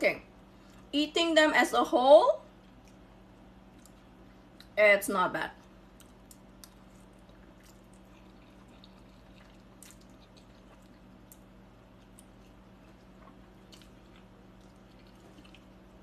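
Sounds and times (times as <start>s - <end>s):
steady low hum: 0.0s - 16.0s
chewing spaghetti: 2.6s - 4.8s, 5.6s - 16.0s.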